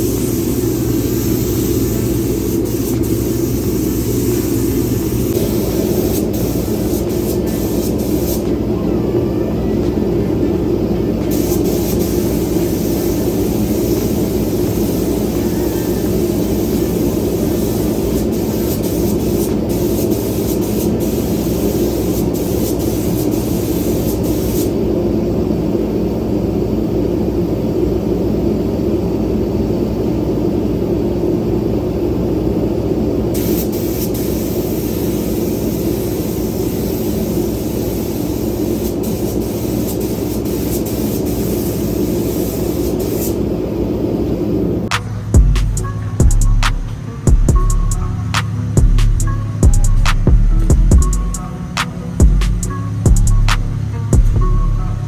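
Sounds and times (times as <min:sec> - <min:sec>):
pressure washer running: 0:00.0 - 0:08.7, 0:09.8 - 0:24.7
spray hissing: 0:00.0 - 0:08.7, 0:11.2 - 0:24.8, 0:33.4 - 0:43.6, 0:44.9 - 0:55.0.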